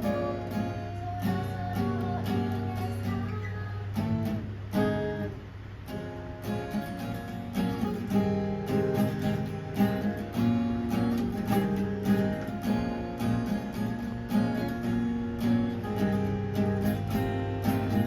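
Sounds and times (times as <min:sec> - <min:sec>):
acoustic guitar strumming chords: 0:00.0 - 0:18.0.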